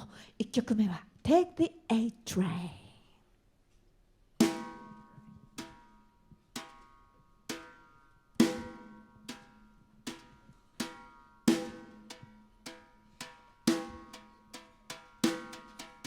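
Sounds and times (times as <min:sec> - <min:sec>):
drum strokes with pitched tone: 0:07.5 - 0:16.0.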